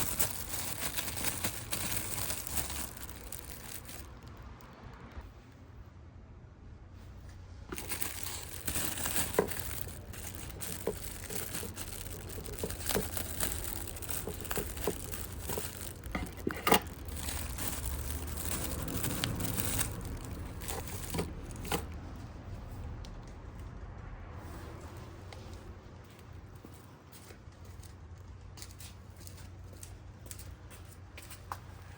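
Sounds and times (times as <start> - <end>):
plastic packaging crinkling: 0.0 - 4.6, 7.7 - 22.0.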